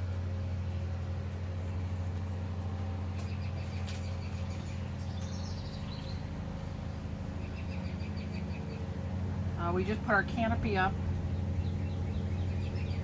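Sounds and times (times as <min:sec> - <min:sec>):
small birds chirping: 0:00.0 - 0:13.0
steady low hum: 0:00.0 - 0:13.0.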